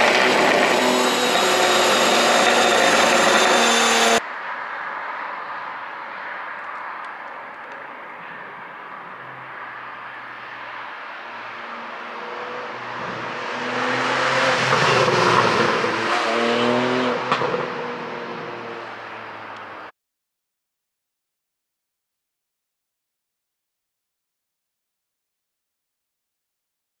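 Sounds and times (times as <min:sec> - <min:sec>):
car engine revving: 0:00.0 - 0:04.2, 0:11.7 - 0:19.3.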